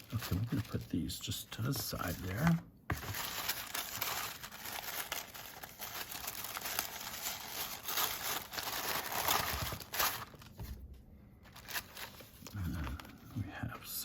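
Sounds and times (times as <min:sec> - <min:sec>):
paper crinkling and rustling: 0:00.0 - 0:13.4.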